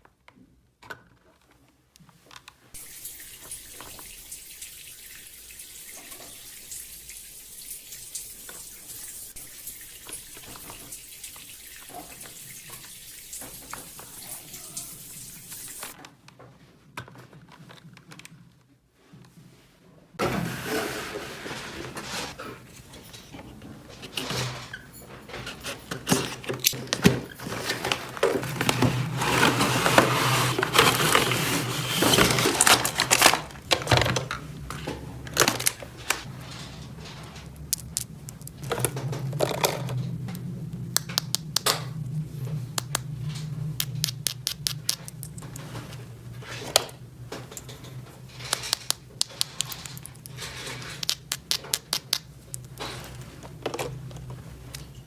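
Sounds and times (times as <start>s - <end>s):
crinkling: 20.2s - 55.0s
hands clicking and tapping objects: 40.9s - 41.8s, 43.8s - 45.5s, 48.4s - 52.8s.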